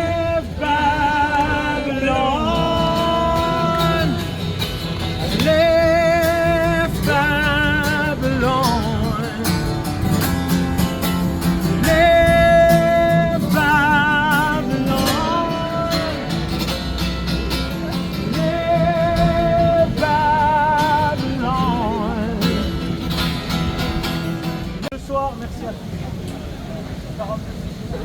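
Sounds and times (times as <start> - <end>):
person singing long notes: 0.0 - 4.6, 5.2 - 16.5, 18.2 - 23.1
acoustic guitar: 0.0 - 28.0.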